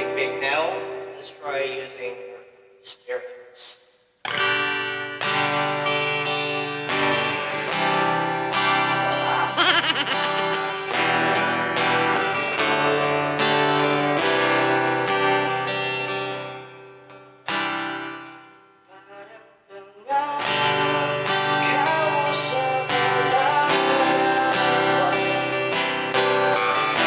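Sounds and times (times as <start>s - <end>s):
acoustic guitar strumming and picking: 20.4s - 27.0s.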